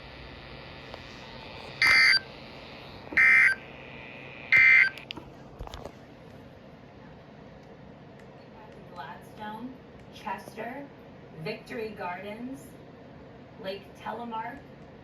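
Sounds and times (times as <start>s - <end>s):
buzzy digital data tones: 0.0s - 5.0s.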